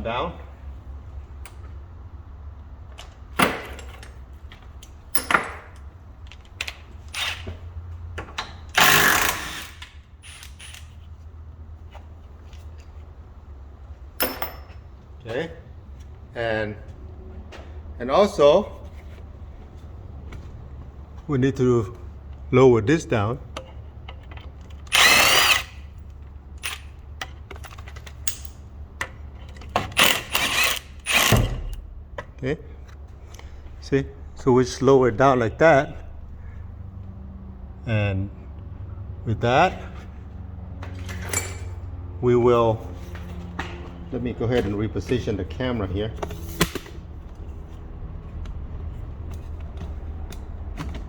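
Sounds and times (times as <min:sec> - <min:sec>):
tools clanking on bolts: 0:03.0 - 0:07.6, 0:08.2 - 0:11.0, 0:14.2 - 0:15.4, 0:23.5 - 0:32.3, 0:40.8 - 0:41.8
power drill running: 0:08.7 - 0:10.8, 0:24.9 - 0:25.9, 0:30.0 - 0:31.8.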